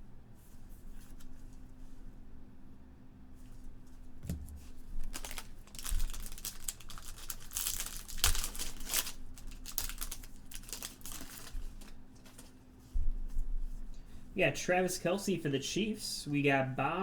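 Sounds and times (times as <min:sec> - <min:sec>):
plastic packaging crinkling: 0:04.6 - 0:12.7.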